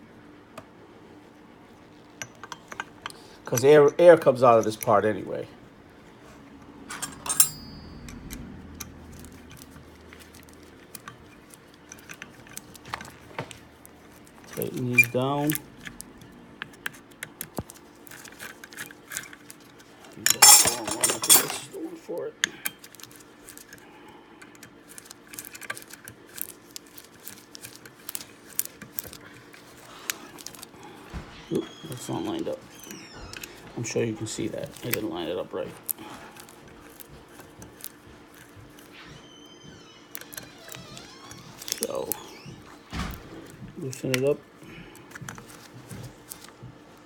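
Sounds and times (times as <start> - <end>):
sharp ringing clink: 6.9 - 8.5
metal clinks and taps: 6.9 - 12.6.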